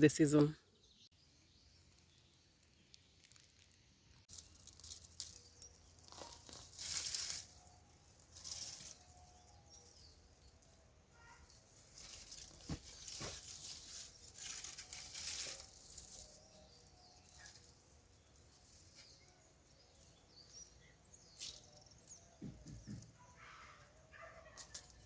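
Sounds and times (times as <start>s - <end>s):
dry plants rustling and tearing: 2.7s - 23.0s, 23.8s - 25.0s
dull thumps: 22.4s - 23.2s.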